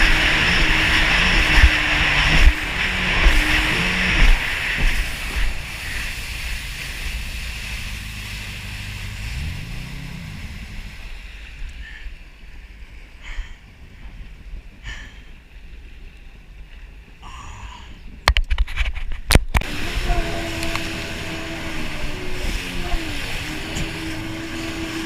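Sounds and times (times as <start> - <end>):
wind on microphone: 0.0 - 12.9
rushing water: 0.0 - 15.4, 18.4 - 25.0
jet ski engine: 0.0 - 16.1, 19.5 - 25.0.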